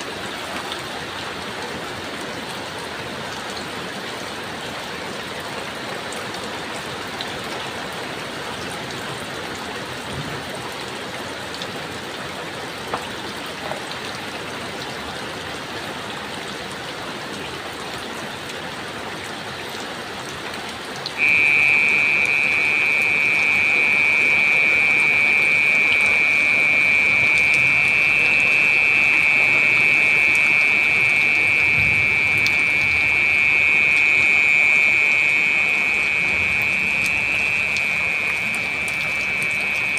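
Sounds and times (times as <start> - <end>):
heavy rain falling: 0.0 - 39.9
faint ticks of drops: 20.6 - 39.9
high-pitched whistling tone: 21.2 - 39.9.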